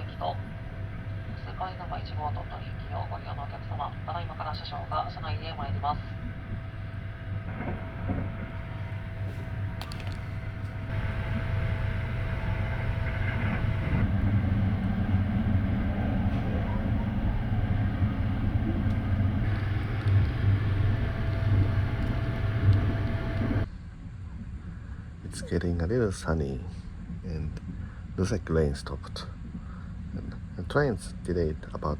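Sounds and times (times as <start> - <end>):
electric train rumbling: 0.0 - 23.7.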